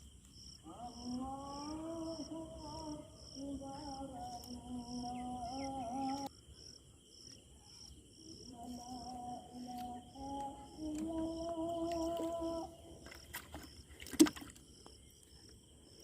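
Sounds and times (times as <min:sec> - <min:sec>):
insect chirping: 0:00.0 - 0:16.0
person humming a slow tune: 0:00.6 - 0:06.4, 0:08.4 - 0:13.3.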